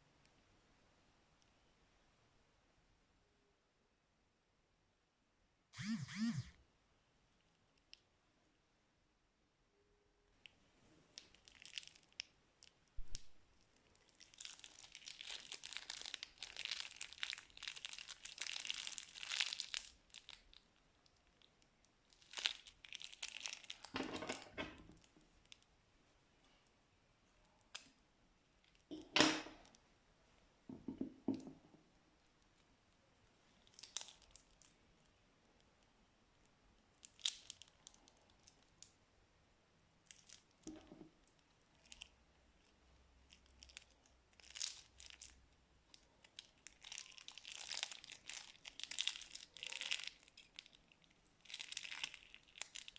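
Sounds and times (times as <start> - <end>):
plastic bags crinkling: 11.2 - 12.2, 13.8 - 20.6, 22.1 - 25.6, 33.6 - 34.7, 43.4 - 45.4, 46.1 - 52.9.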